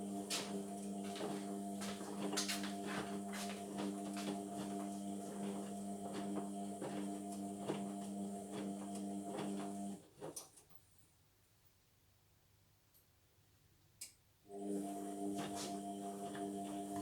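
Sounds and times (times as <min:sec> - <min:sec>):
washing machine motor hum: 0:00.0 - 0:10.0, 0:14.5 - 0:17.0.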